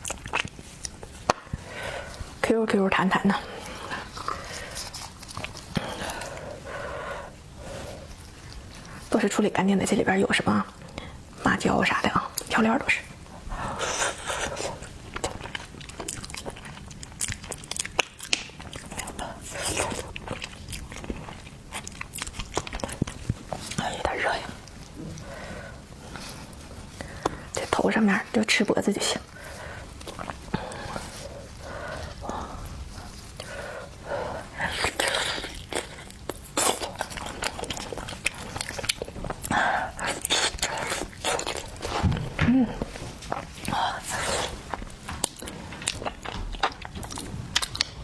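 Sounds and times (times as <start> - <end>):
wet mouth clicks and smacks: 0.0 - 1.6, 15.1 - 19.2
person chewing crunchily: 0.0 - 2.4, 3.4 - 9.2, 13.6 - 27.7, 29.1 - 48.0.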